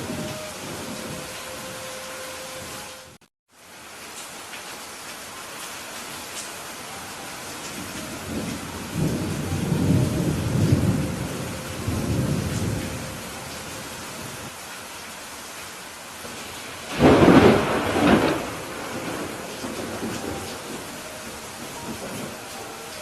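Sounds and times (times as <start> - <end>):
steady rain: 0.0 - 23.0
rolling thunder rumble: 7.7 - 14.5, 16.3 - 22.6
loud thunderclap: 16.9 - 20.8.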